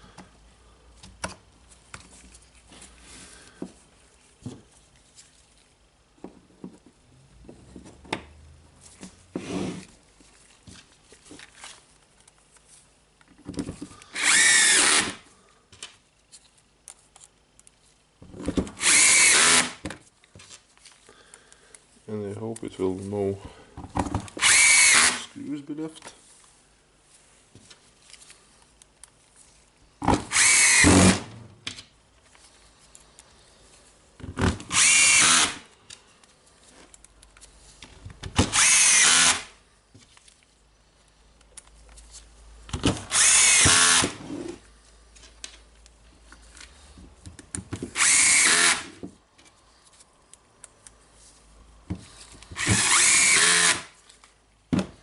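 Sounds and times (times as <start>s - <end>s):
power screwdriver driving screws: 14.2s - 15.2s, 18.8s - 19.8s, 24.4s - 25.3s, 30.2s - 31.3s, 34.6s - 35.6s, 38.4s - 39.5s, 43.0s - 44.2s, 47.9s - 49.0s, 52.6s - 53.9s.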